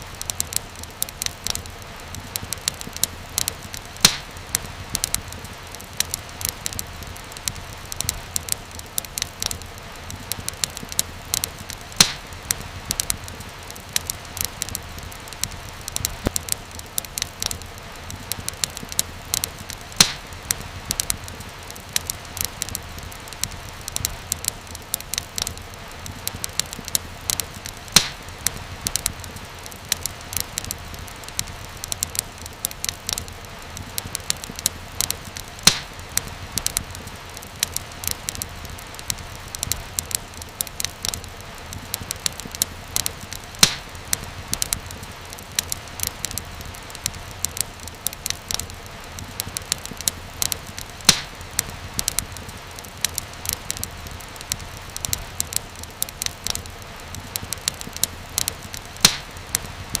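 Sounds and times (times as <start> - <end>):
wood fire crackling: 0.0 - 60.0
loud fire pop: 28.0 - 28.2, 35.7 - 36.0, 43.6 - 43.9.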